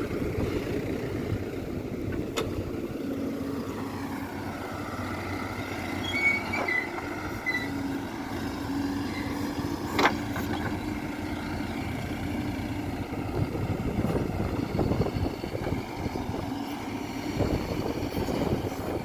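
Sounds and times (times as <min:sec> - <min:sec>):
diesel engine running: 0:00.0 - 0:19.0
high squeaks: 0:05.9 - 0:07.9.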